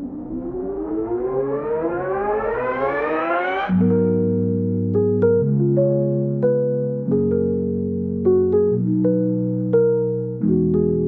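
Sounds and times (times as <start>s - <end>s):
siren-like rising tone: 0.0s - 3.8s.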